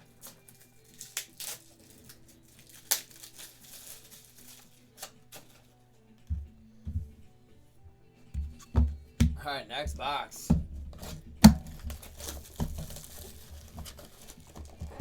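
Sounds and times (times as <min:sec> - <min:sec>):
card pack wrappers crinkling and tearing: 0:00.0 - 0:05.7, 0:11.0 - 0:15.0.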